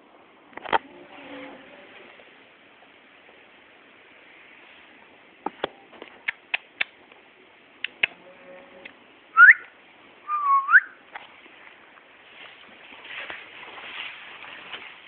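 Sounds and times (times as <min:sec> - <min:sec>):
person whistling: 0:09.4 - 0:09.7, 0:10.3 - 0:11.0.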